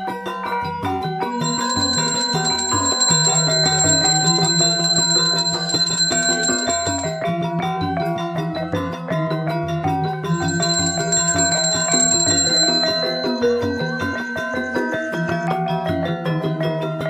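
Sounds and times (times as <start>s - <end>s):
small hand bell ringing: 1.3s - 7.3s, 10.3s - 15.5s.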